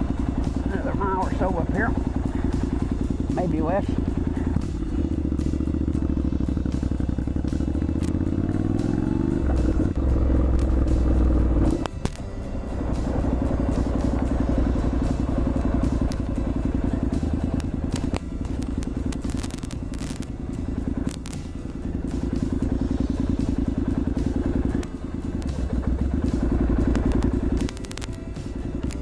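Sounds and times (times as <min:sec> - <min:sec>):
motorcycle engine running: 0:00.0 - 0:29.0
scattered clicks: 0:11.6 - 0:12.3, 0:15.0 - 0:20.3, 0:20.9 - 0:29.0.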